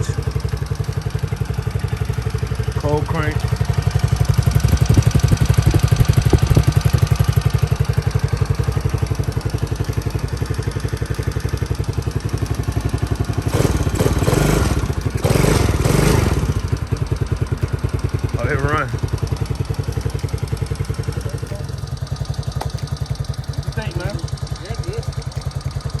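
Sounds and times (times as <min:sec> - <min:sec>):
engine idling with steady putter: 0:00.0 - 0:26.0.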